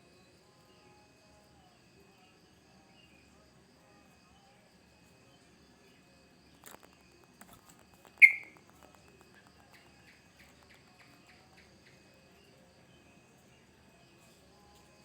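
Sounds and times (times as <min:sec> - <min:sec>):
faint insect trill: 0:00.0 - 0:15.0
bulbul calling: 0:08.2 - 0:08.6.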